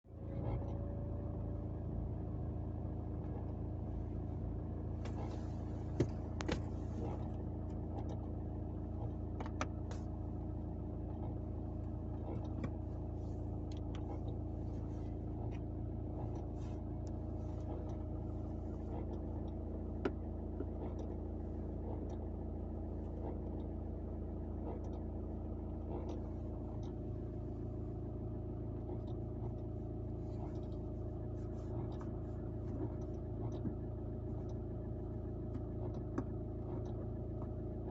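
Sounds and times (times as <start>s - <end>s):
car engine drone: 0.0s - 37.9s
light clicks and ticks: 26.0s - 27.0s.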